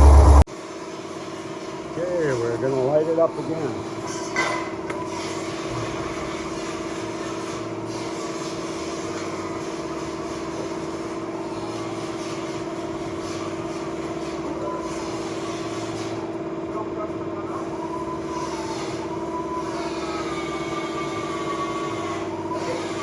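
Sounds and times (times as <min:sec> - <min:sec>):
vee eight engine idling: 0:00.0 - 0:00.4.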